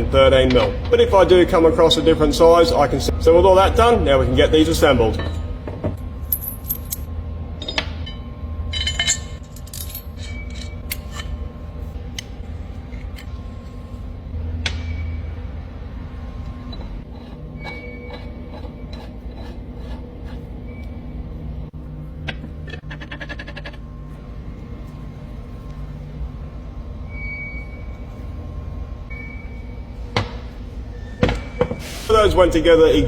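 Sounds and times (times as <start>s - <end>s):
steady low hum: 0.0s - 33.0s
steel parts clinking: 6.3s - 11.4s.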